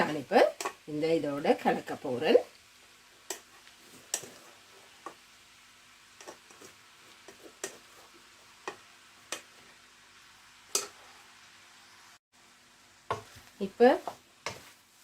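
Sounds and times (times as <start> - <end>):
faint steady hiss: 0.0 - 15.0
spoon tapping a pan: 0.6 - 0.8, 8.6 - 9.5, 10.7 - 11.0, 13.1 - 13.4.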